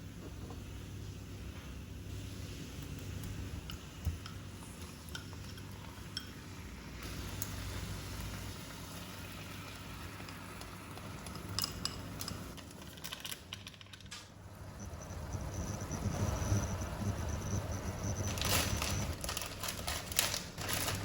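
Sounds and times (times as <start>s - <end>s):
utensils and dishes clinking: 10.2s - 14.2s
steady low hum: 14.3s - 19.8s.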